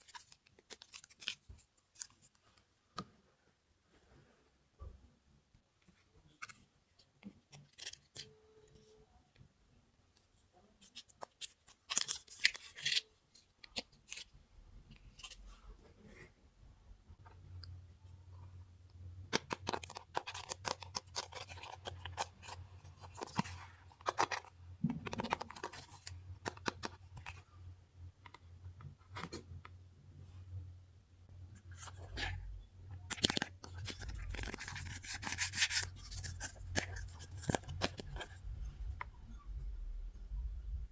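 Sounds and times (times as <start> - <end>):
packaging rustling: 33.1 - 38.4
low hum: 38.3 - 40.9.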